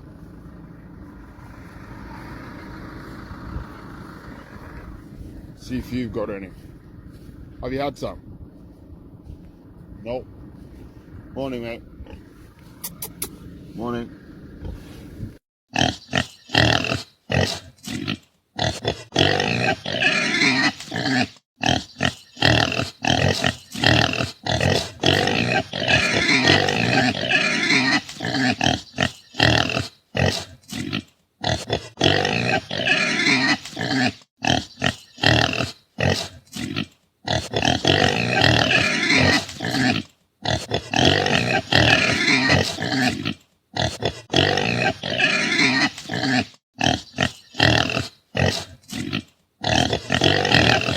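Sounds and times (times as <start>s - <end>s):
pigs calling loudly: 15.7s - 50.9s.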